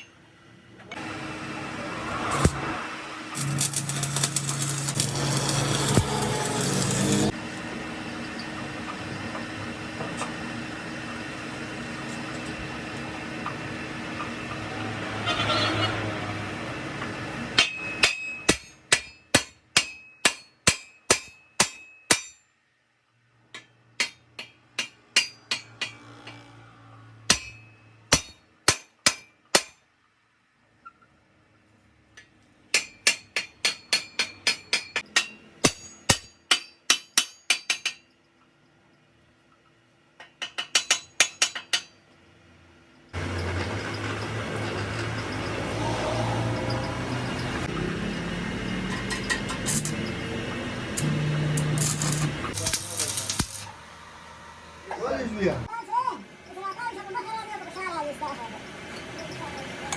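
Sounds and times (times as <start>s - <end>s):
steady mechanical noise: 0.1s - 19.1s, 41.2s - 59.9s.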